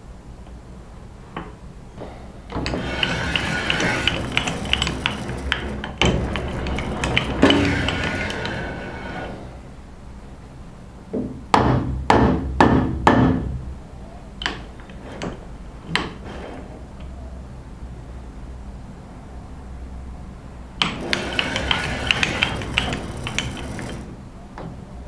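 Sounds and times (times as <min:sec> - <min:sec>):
steady low hum: 0:00.0 - 0:11.6.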